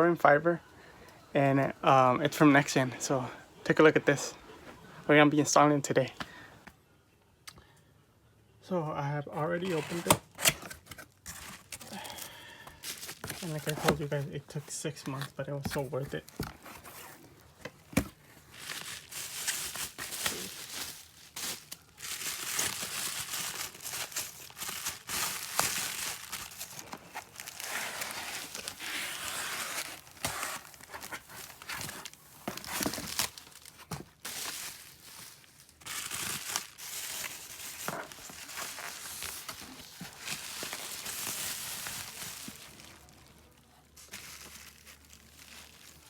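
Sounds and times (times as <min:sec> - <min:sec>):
packaging rustling: 0:09.6 - 0:46.0.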